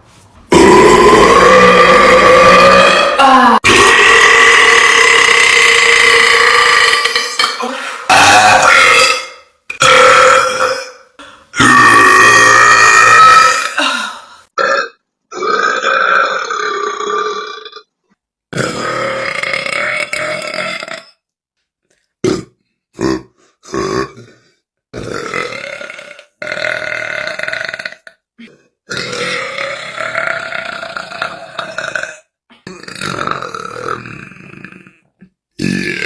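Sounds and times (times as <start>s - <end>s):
woman burping: 0.5s - 17.8s.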